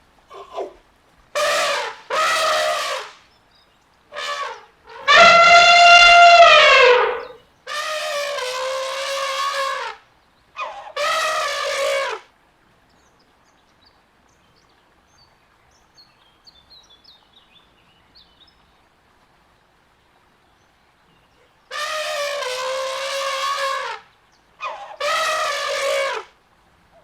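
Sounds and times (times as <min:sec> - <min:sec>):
elephant trumpeting: 0:01.4 - 0:03.1, 0:04.1 - 0:10.0, 0:10.6 - 0:12.2, 0:21.7 - 0:24.0, 0:24.6 - 0:26.3.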